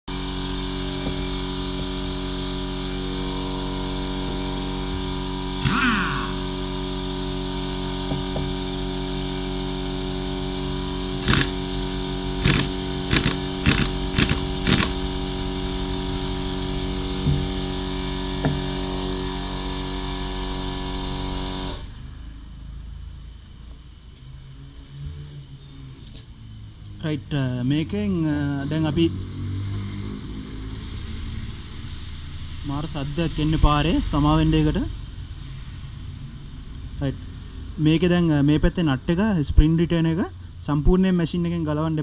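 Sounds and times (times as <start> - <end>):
steady mechanical hum: 0.1 - 29.1, 29.7 - 42.0
sharp clicks or knocks: 11.2 - 11.6, 12.4 - 15.0.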